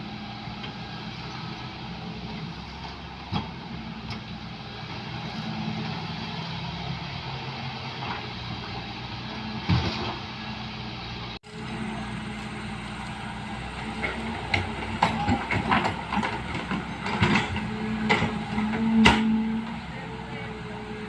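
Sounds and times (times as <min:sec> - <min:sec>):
excavator diesel engine running: 0:00.0 - 0:21.0
knocks and clanks: 0:14.0 - 0:19.8.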